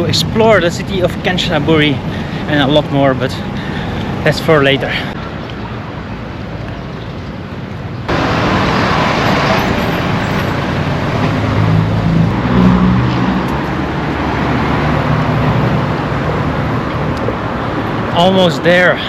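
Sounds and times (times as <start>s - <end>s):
street traffic: 0.0s - 19.0s
vehicle engine passing: 8.1s - 18.2s.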